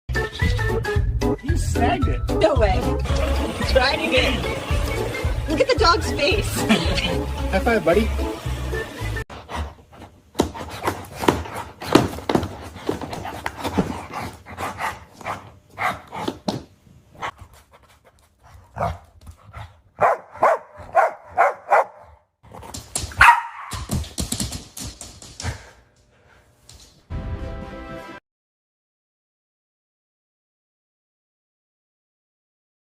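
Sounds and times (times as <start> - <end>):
dog barking: 18.8 - 19.1, 20.0 - 22.2, 23.2 - 23.9.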